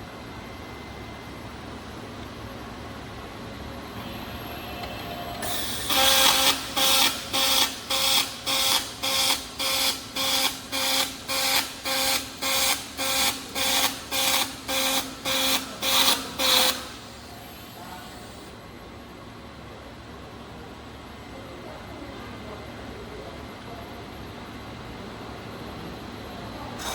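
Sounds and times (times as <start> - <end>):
arc welding crackling bursts: 5.4 - 17.3.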